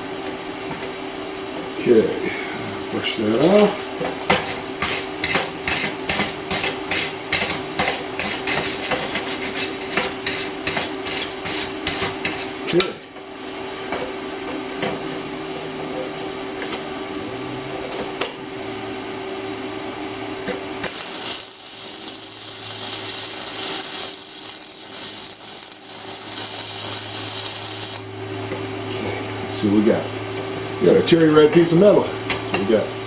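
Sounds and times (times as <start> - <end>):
steady hum: 0.0 - 33.0
welding arc crackles and pops: 20.8 - 28.1
welding arc sizzling: 20.8 - 28.1.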